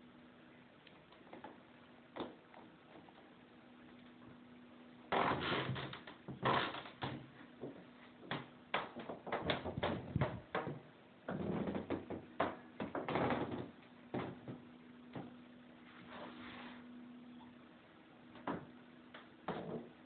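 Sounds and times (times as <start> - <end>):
floor creaking underfoot: 5.1 - 16.9, 18.3 - 20.0.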